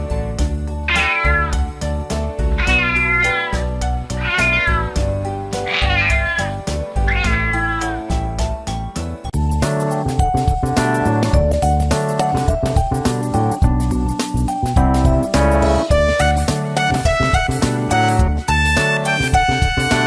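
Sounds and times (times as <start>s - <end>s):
upbeat children's music: 0.0s - 20.0s
cat meowing: 0.8s - 1.8s, 2.5s - 8.2s.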